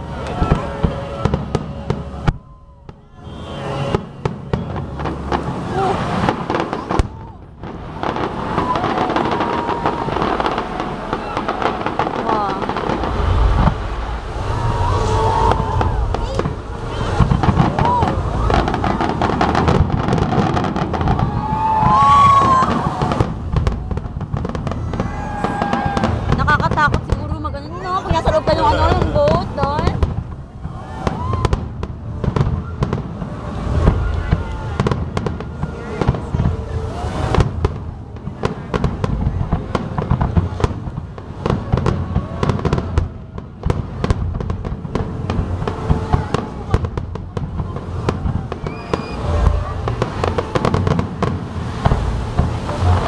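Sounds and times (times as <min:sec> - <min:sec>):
fireworks crackling and popping: 0:00.0 - 0:53.0
low rumble: 0:00.0 - 0:53.0
rising whistle: 0:13.0 - 0:19.0, 0:48.6 - 0:49.8.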